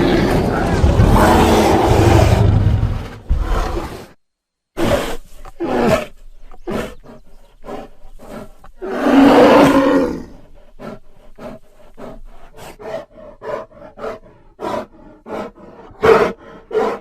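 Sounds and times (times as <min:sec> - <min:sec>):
dinosaur growls: 0:00.0 - 0:04.1
dinosaur roar: 0:00.0 - 0:04.1, 0:07.8 - 0:11.0.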